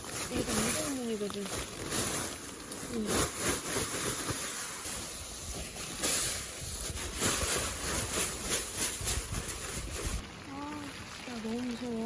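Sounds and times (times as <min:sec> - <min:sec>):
strong wind gusting around tent: 0:00.0 - 0:11.2
wind rumble on microphone: 0:05.2 - 0:10.3.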